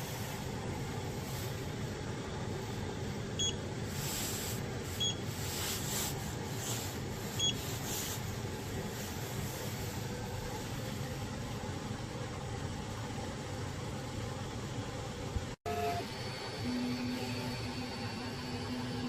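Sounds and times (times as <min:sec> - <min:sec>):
printer fan hum: 0:00.0 - 0:19.0
short electronic beeps: 0:03.4 - 0:03.6.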